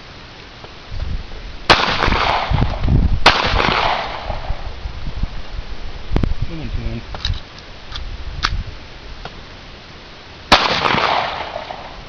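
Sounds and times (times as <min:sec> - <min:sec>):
loud gunshot: 0:01.7 - 0:04.6, 0:10.5 - 0:12.0.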